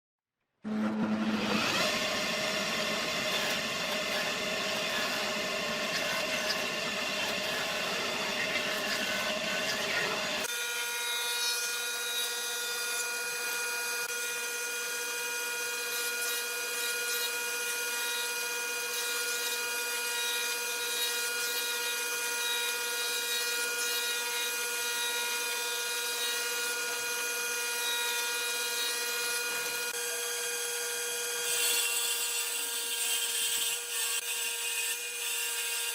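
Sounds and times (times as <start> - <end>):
power tool cutting wood: 0.6 - 35.9
high motor whine: 0.7 - 10.5.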